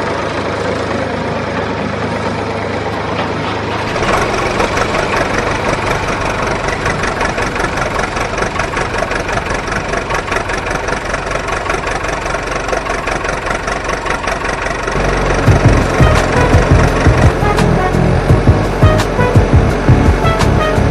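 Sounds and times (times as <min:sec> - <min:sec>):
diesel tractor engine idling: 0:00.0 - 0:20.9
deep pulsing sound: 0:14.9 - 0:20.9.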